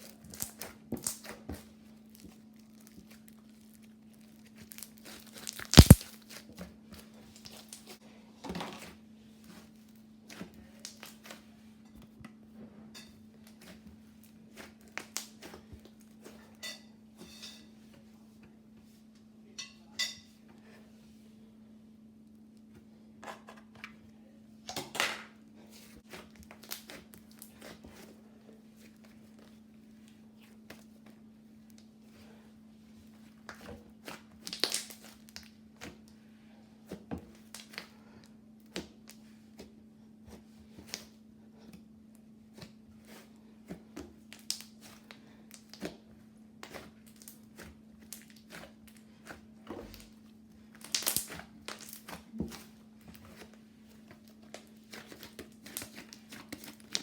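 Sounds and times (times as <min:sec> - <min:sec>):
crinkling and rustling: 0:00.3 - 0:09.9, 0:50.8 - 0:57.0
small objects clicking: 0:05.5 - 0:06.0.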